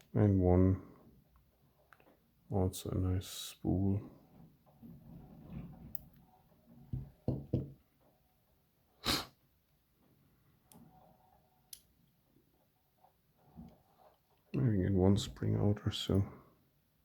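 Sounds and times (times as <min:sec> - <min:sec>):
short hissing breath: 0:09.0 - 0:09.4.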